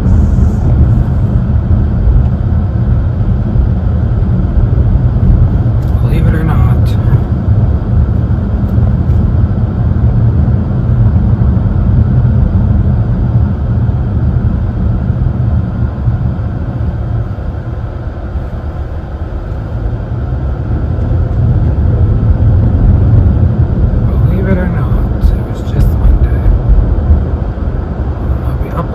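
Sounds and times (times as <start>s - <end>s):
road and engine rumble in car: 0.0s - 28.9s.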